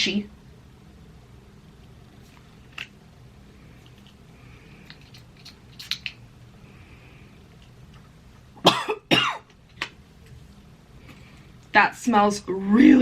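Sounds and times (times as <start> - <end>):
woman coughing: 8.6 - 9.4.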